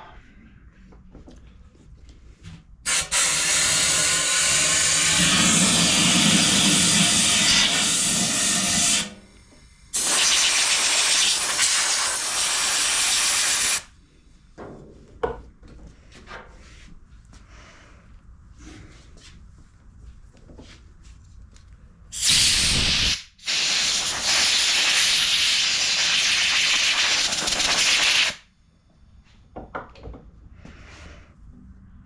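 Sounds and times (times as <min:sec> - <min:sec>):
compressed air blasting: 0:02.9 - 0:09.2, 0:09.9 - 0:13.9, 0:22.1 - 0:28.4.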